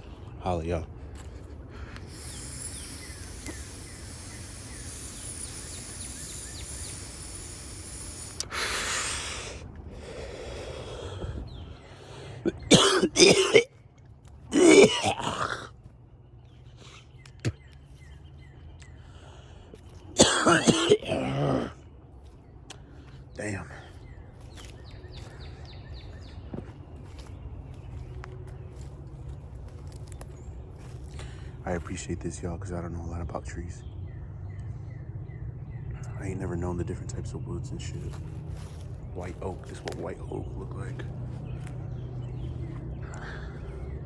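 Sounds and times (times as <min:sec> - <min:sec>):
faint bird chirps: 0:00.0 - 0:09.6, 0:22.2 - 0:44.0
breathy exhale: 0:01.7 - 0:12.5
man coughing hard: 0:12.5 - 0:13.7, 0:14.5 - 0:15.7, 0:20.2 - 0:21.8.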